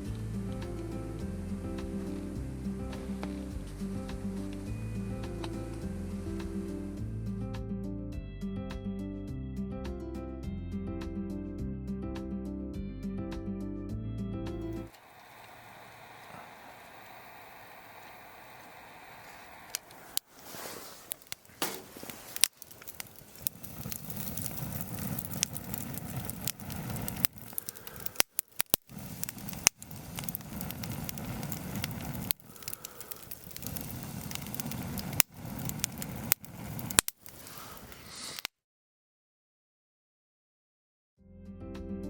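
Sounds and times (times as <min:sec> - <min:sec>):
wood fire crackling and popping: 0:00.0 - 0:07.0, 0:14.7 - 0:38.5.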